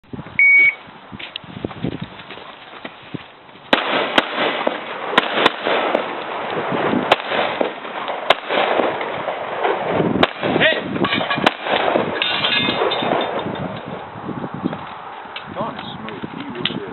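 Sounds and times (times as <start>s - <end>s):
pistol shots: 3.7s - 13.4s.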